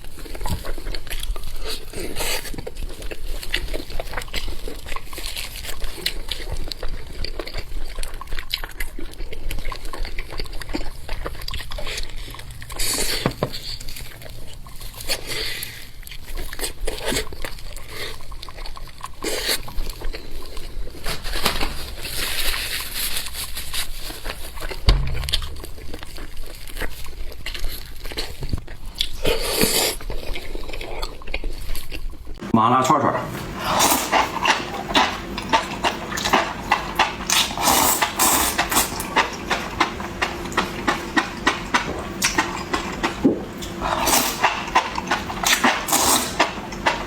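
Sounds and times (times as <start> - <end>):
wet chewing and slurping: 0.0 - 32.5, 33.2 - 47.0
dull low bump: 24.8 - 26.7.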